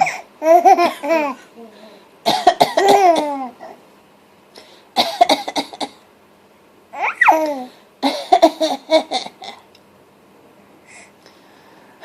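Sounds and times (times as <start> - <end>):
person coughing: 2.3 - 3.8, 5.0 - 6.0, 8.0 - 9.6.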